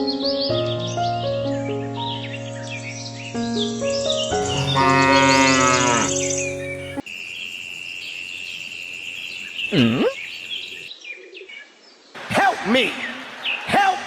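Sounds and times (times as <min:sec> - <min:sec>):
cow mooing: 0:04.4 - 0:07.0
steady high tone: 0:04.4 - 0:07.0.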